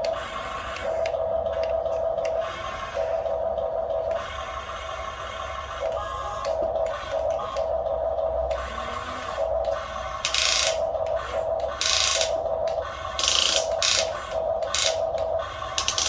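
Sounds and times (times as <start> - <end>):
small electric motors whirring: 0.0 - 3.2, 8.5 - 16.0.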